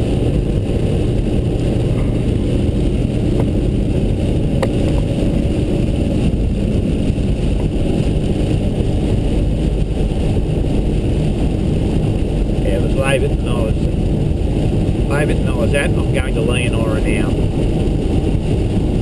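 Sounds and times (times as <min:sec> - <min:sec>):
engine and tyre rumble: 0:00.0 - 0:19.0.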